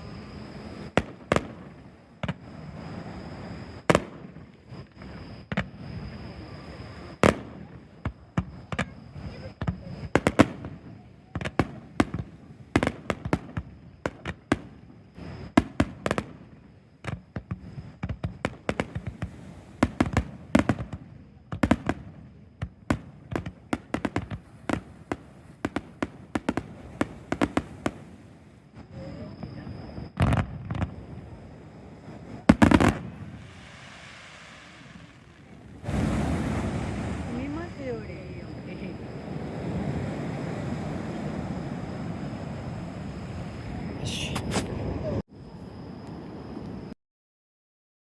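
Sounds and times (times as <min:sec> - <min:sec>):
fireworks bursting with sharp bangs: 0:00.8 - 0:02.8, 0:03.8 - 0:06.1, 0:07.2 - 0:28.5, 0:30.2 - 0:31.1, 0:32.2 - 0:38.9
fireworks crackle: 0:21.6 - 0:28.2, 0:32.4 - 0:38.2.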